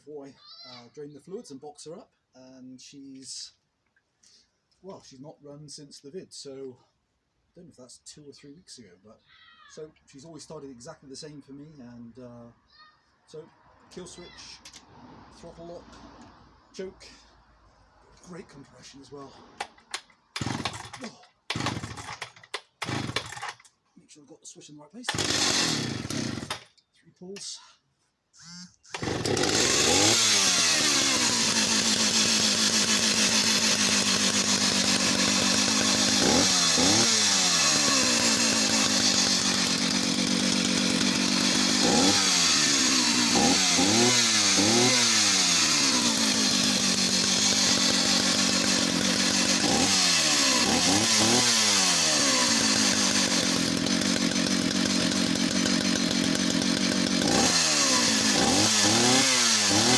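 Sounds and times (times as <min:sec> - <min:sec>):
chainsaw idling and revving: 0:19.6 - 0:23.7, 0:25.1 - 0:26.7, 0:28.4 - 0:59.9.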